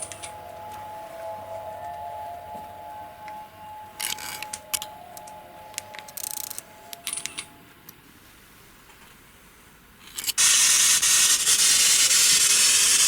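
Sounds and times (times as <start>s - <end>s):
faint steady drone: 0.0s - 9.8s
loud steady hiss: 8.1s - 13.0s.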